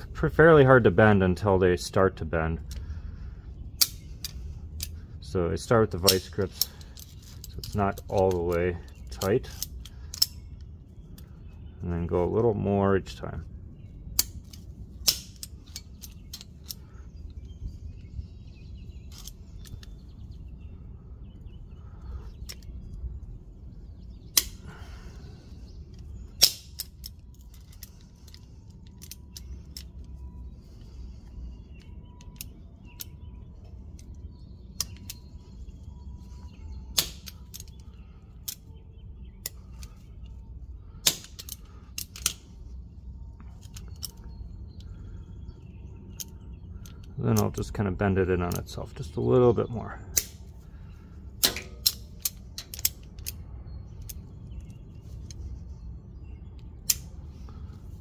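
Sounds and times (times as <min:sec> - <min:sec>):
low steady hum: 0:00.0 - 0:58.0
locking pliers metallic clicks: 0:05.9 - 0:10.6, 0:25.9 - 0:30.2, 0:31.8 - 0:33.2, 0:41.0 - 0:42.4, 0:51.4 - 0:53.4.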